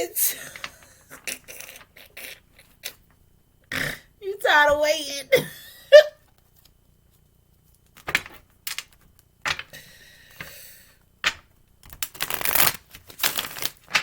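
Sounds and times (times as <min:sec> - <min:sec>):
cards being shuffled: 0:11.3 - 0:14.0.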